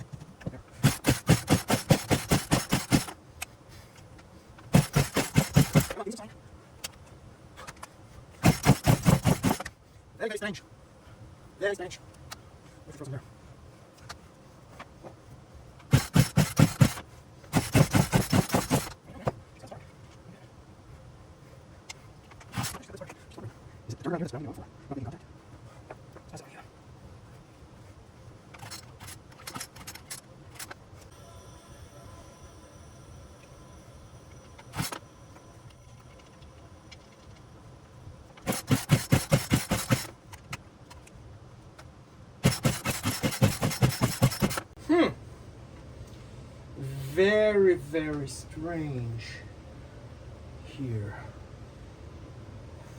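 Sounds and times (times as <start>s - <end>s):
chainsaw pull-start cranking: 0.8s - 3.1s, 4.7s - 6.0s, 8.4s - 9.7s, 15.9s - 17.0s, 17.6s - 19.0s, 38.4s - 40.1s, 42.4s - 44.7s
chainsaw recoil starter chugging: 38.4s - 40.1s, 42.4s - 44.6s.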